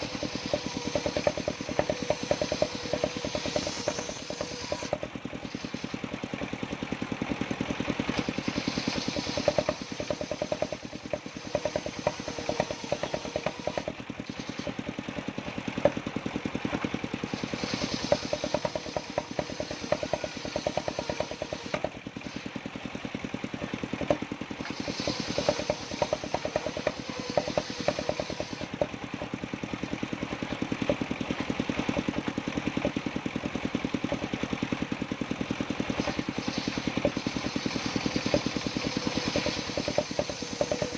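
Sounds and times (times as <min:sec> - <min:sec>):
high saw whine: 0:00.0 - 0:06.2, 0:08.1 - 0:14.8, 0:16.7 - 0:22.6, 0:24.0 - 0:29.0, 0:35.6 - 0:40.9
sawmill engine running: 0:00.0 - 0:40.9.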